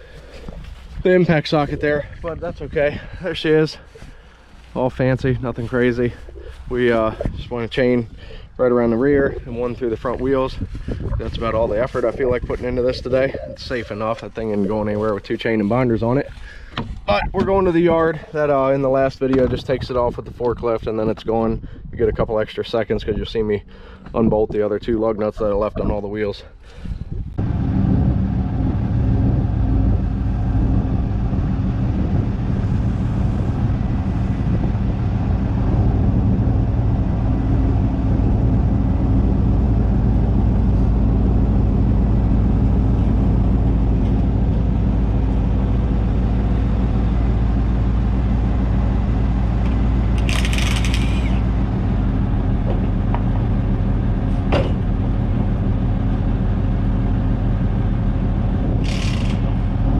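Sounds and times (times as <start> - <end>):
heavy vehicle engine droning: 27.3 - 59.9
sharp click: 50.2 - 51.4.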